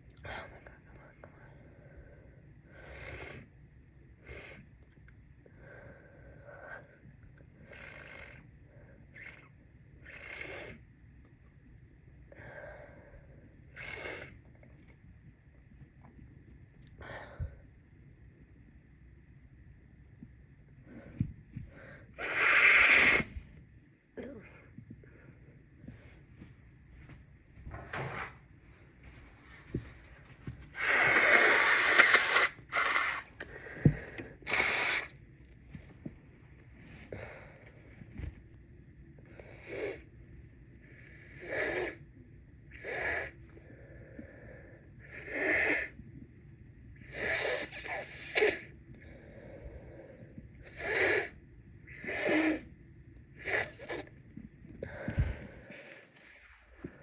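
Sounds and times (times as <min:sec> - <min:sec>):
person blowing nose: 0:22.2 - 0:23.4, 0:30.8 - 0:33.3, 0:34.4 - 0:35.1.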